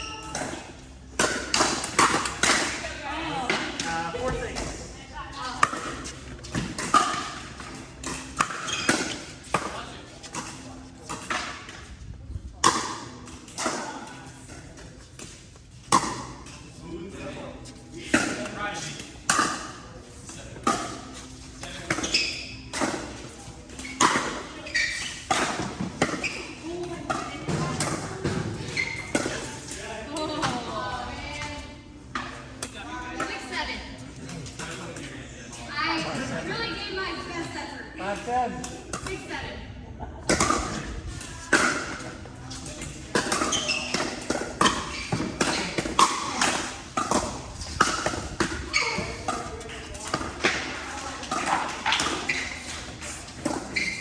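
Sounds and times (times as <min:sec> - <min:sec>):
paddle hitting pickleball: 0:05.6 - 0:09.8, 0:43.1 - 0:50.6.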